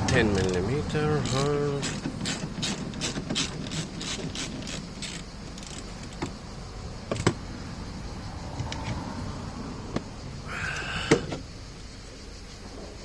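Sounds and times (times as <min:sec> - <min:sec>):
ratchet wrench clicking: 0:00.1 - 0:06.3.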